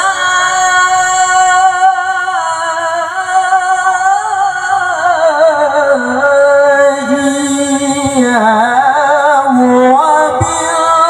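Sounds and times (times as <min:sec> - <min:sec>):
man reciting in melodic chant: 0:03.8 - 0:11.0.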